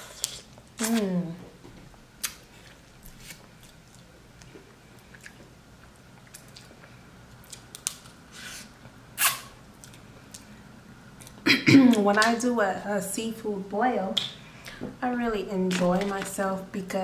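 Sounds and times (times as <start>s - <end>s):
chewing with wet mouth clicks: 3.6s - 8.1s.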